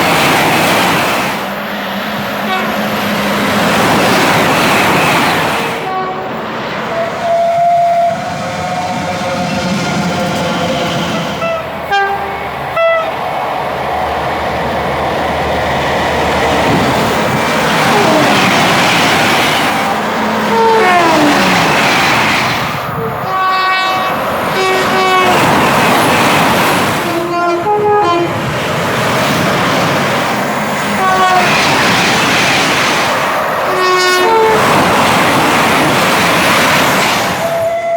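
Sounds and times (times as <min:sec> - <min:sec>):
train running past: 0:00.0 - 0:37.9
train horn blasts: 0:02.5 - 0:02.8, 0:05.8 - 0:10.4, 0:11.2 - 0:13.2, 0:19.8 - 0:21.5, 0:23.0 - 0:25.6, 0:27.1 - 0:28.4, 0:30.9 - 0:31.7, 0:33.7 - 0:34.7, 0:37.5 - 0:37.9.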